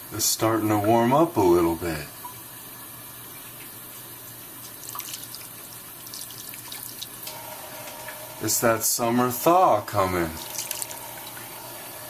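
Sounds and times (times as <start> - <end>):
water running: 0.0 - 12.0
water drips or splashes: 3.3 - 7.3, 10.4 - 11.6.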